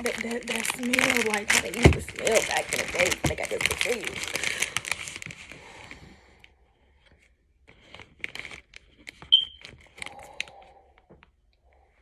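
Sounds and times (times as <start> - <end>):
plastic packaging crinkling and tearing: 0.0 - 6.0, 7.7 - 10.5.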